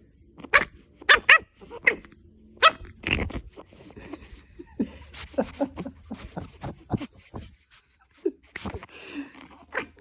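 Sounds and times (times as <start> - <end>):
dog barking and yelping: 0.4 - 3.6, 9.6 - 10.0.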